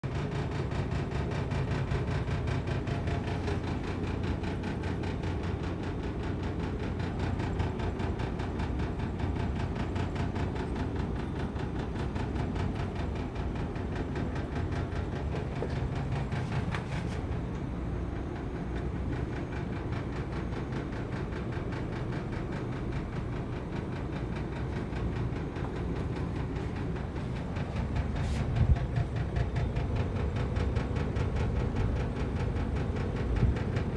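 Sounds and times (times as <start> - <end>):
air conditioner unit humming and pulsing: 0.0 - 33.9.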